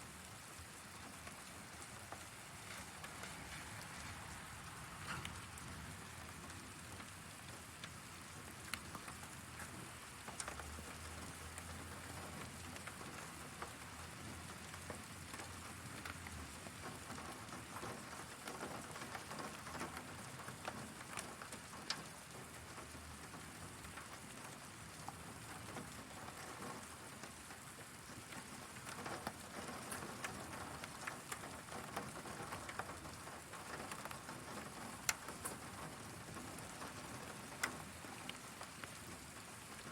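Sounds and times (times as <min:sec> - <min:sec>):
heavy rain hissing: 0:00.0 - 0:08.7
raindrops tapping surfaces: 0:00.0 - 0:39.9.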